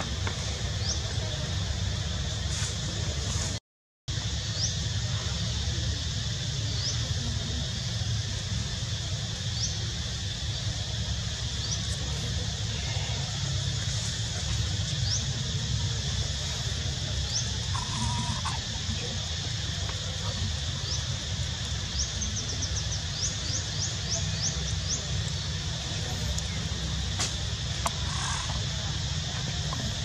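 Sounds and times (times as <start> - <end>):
high insect hiss: 0.0 - 30.0.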